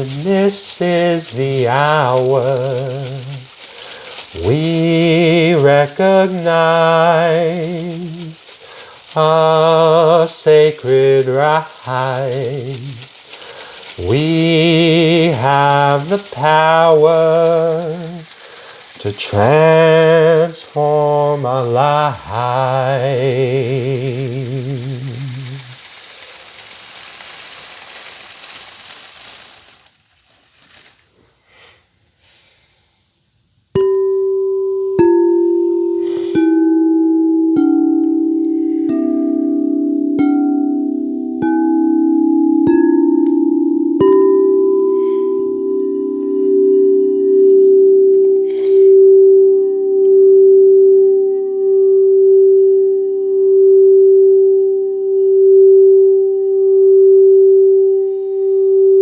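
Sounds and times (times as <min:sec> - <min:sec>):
rain-like rushing: 0:00.0 - 0:31.1, 0:48.4 - 0:48.9.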